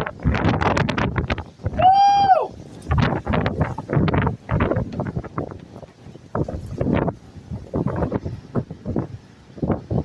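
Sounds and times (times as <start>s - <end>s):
gusty wind buffeting microphone: 0.0s - 10.0s.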